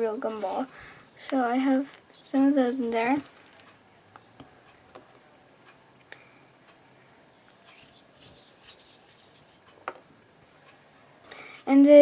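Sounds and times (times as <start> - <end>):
soft rubbing of clay: 0.2 - 1.4, 7.4 - 9.8.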